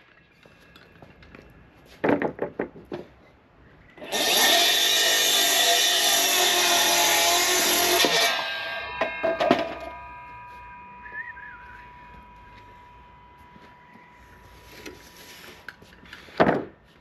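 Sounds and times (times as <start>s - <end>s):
wooden knocks and clunks: 2.0s - 3.2s, 16.3s - 16.8s
power saw ringing tone: 4.0s - 15.8s.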